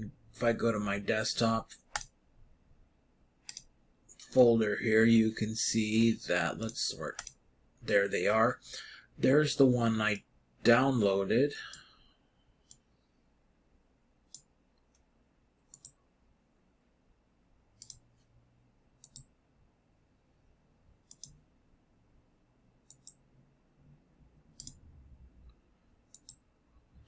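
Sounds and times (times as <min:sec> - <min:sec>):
faint room hum: 0:00.0 - 0:27.0
computer mouse clicks: 0:01.8 - 0:02.2, 0:03.4 - 0:04.3, 0:06.6 - 0:07.4, 0:12.6 - 0:12.9, 0:14.3 - 0:15.1, 0:15.7 - 0:16.0, 0:17.8 - 0:18.2, 0:19.0 - 0:19.3, 0:21.0 - 0:21.4, 0:22.8 - 0:23.2, 0:24.5 - 0:26.5.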